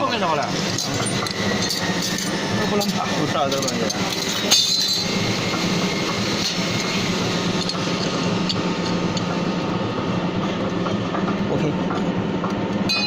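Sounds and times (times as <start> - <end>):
punching machine hum and clatter: 0.0 - 13.0
sharp metallic clank: 0.7 - 7.0.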